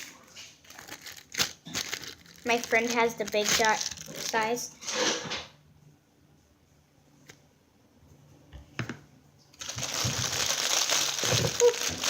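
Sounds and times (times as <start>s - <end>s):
plastic bag crinkling: 0.0s - 4.7s, 9.6s - 12.0s.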